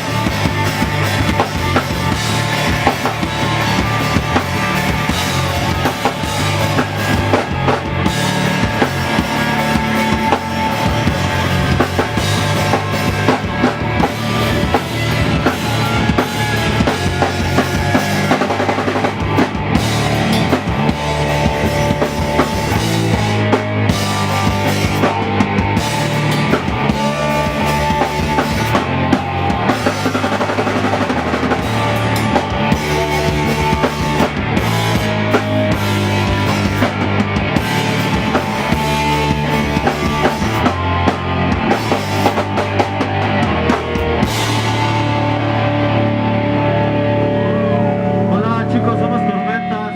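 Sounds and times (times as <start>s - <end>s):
drum kit beat: 0.0s - 47.2s
bass guitar: 0.0s - 49.9s
electric guitar: 0.0s - 49.9s.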